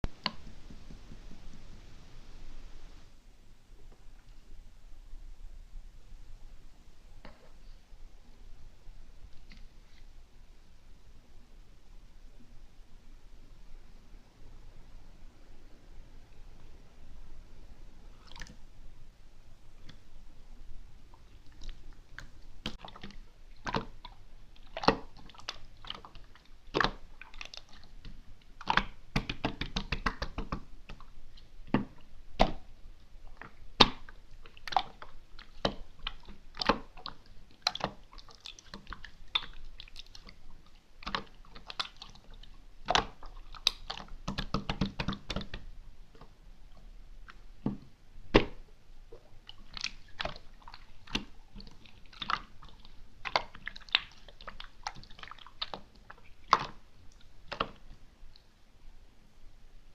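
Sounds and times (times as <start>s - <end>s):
slime squishing with wet pops: 21.0s - 58.4s
slime crackling: 48.3s - 57.9s.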